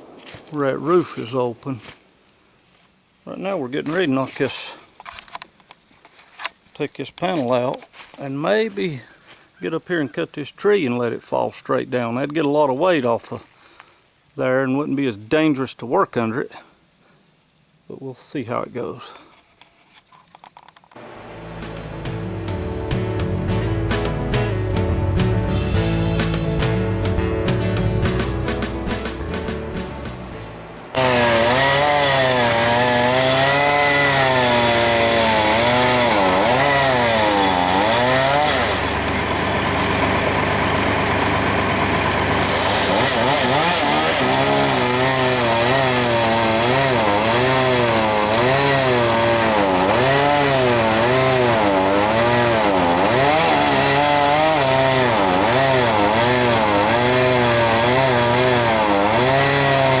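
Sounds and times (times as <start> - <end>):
chainsaw cutting a tree: 30.9 - 60.0.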